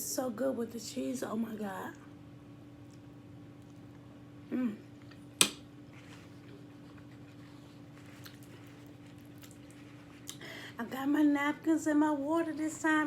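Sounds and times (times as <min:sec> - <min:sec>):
steady low hum: 0:00.0 - 0:13.0
person humming: 0:04.5 - 0:04.9.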